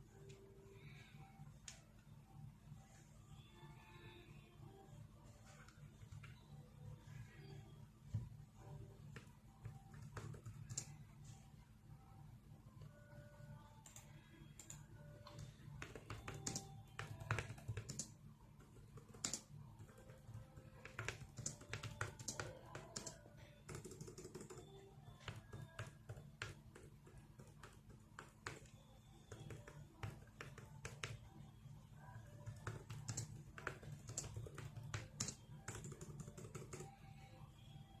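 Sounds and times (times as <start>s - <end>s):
keyboard keys clicking: 9.1s - 11.0s, 13.8s - 31.3s, 32.1s - 36.9s.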